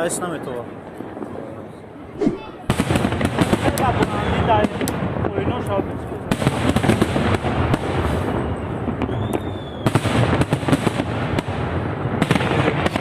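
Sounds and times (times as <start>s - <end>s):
fireworks crackling and banging: 0.0s - 13.0s
whistling tone: 8.4s - 9.9s.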